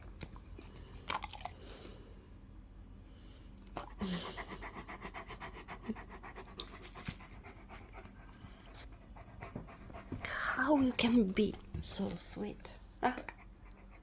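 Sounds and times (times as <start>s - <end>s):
dog panting rapidly: 4.0s - 6.8s, 7.4s - 12.2s, 13.2s - 14.0s.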